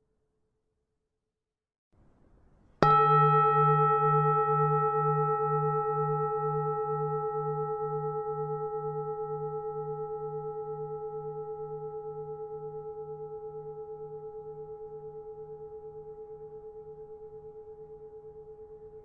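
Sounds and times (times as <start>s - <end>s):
temple bell ringing: 2.8s - 10.4s.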